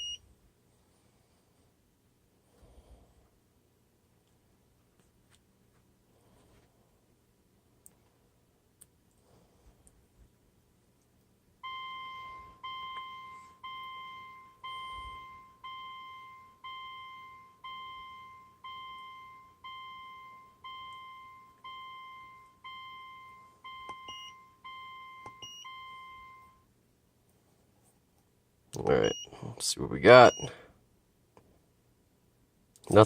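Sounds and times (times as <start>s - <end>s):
electronic chime dinging: 11.6s - 26.6s.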